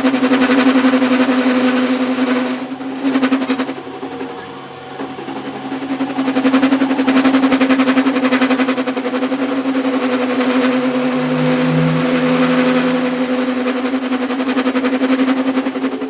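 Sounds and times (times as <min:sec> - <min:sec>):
workshop machine humming and ticking: 0:02.6 - 0:13.7.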